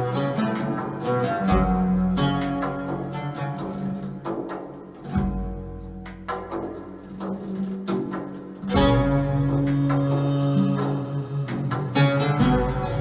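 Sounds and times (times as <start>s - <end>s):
plucked string music: 0.0s - 13.0s
deep bass notes: 8.8s - 10.6s.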